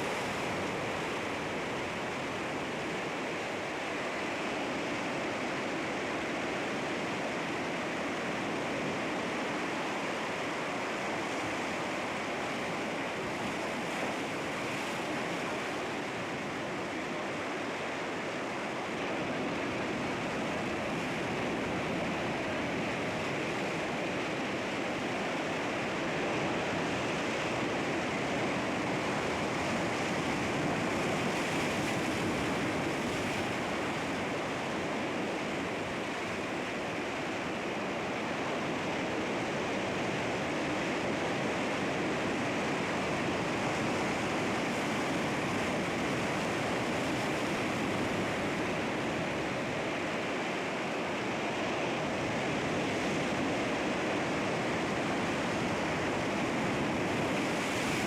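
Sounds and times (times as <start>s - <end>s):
sea waves washing against rocks: 25.9s - 58.0s.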